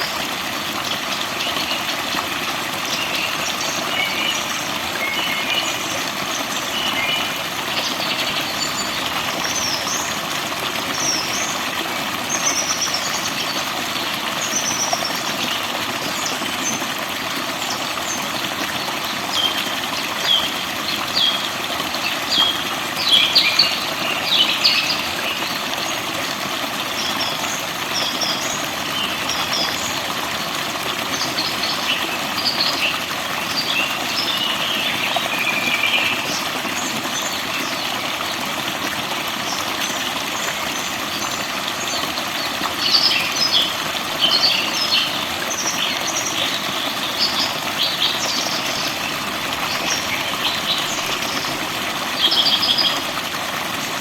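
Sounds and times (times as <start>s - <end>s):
flowing water rushing: 0.0s - 54.0s.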